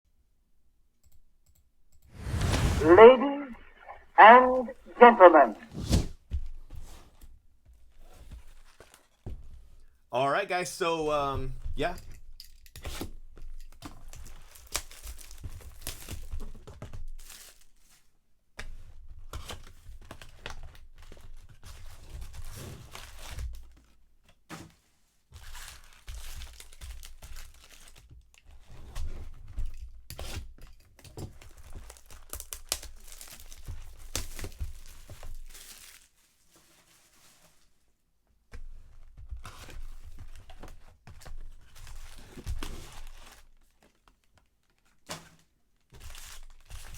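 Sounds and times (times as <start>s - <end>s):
plastic wrapping tearing and crinkling: 14.1s - 18.0s, 25.4s - 28.2s, 31.4s - 37.0s, 46.0s - 46.9s.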